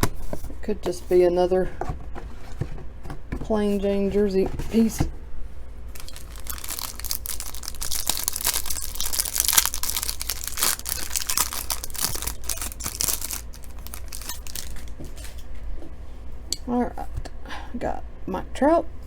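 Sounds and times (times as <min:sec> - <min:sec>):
plastic wrapping crinkling and tearing: 0:05.9 - 0:15.5.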